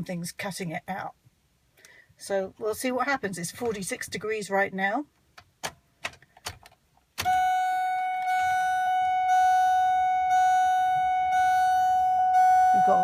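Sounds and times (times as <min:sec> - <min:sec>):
high electronic warning tone: 0:07.2 - 0:13.0.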